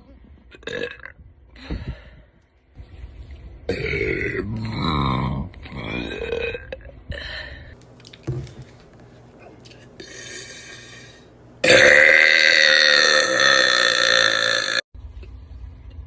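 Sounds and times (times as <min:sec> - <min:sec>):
woman burping: 0:00.5 - 0:01.2, 0:03.7 - 0:06.9, 0:11.6 - 0:14.8.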